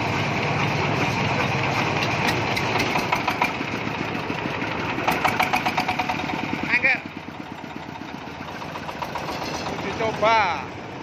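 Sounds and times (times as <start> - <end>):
corn sheller machine running: 0.0 - 10.8
sharp clicks and rattles: 2.0 - 3.8, 5.0 - 10.4.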